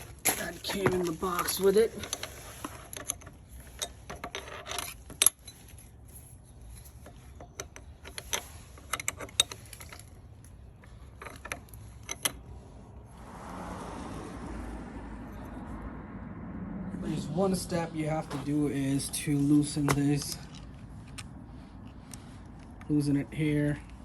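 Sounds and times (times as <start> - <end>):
soft rushing noise: 12.5 - 23.5.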